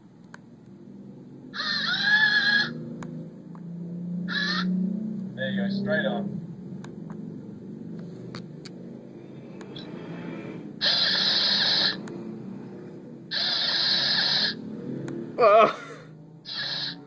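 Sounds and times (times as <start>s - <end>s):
robot motors whirring: 10.8s - 12.1s, 13.3s - 14.6s, 16.5s - 17.0s.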